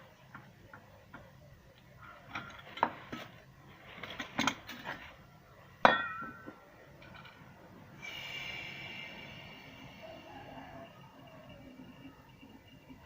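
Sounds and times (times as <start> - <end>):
ringing metallic clang: 5.8 - 6.6.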